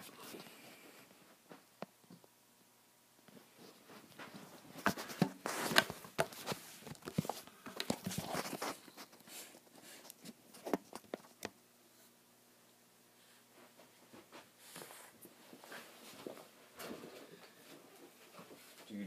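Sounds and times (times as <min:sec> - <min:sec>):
rustling: 0:03.3 - 0:11.5.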